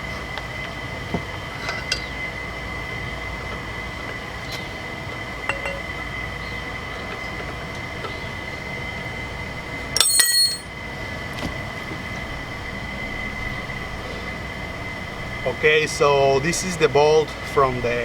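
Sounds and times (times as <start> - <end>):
loud metallic clink: 10.0 - 10.7.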